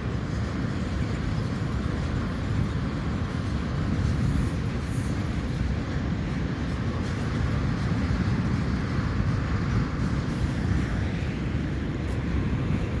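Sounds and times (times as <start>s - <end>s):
train rumbling on rails: 0.0s - 13.0s.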